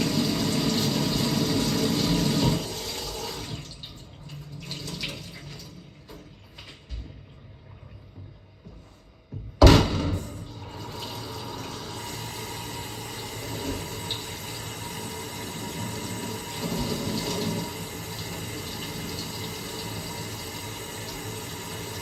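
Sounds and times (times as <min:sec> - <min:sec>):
tap water running into sink: 0:00.0 - 0:06.8, 0:10.2 - 0:22.0
loud knock: 0:09.6 - 0:10.3.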